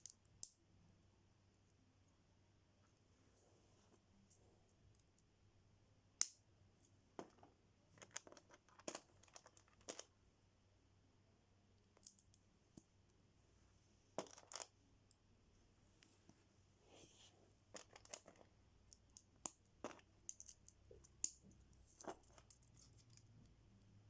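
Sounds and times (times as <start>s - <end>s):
plastic bricks clicking: 19.2s - 21.4s.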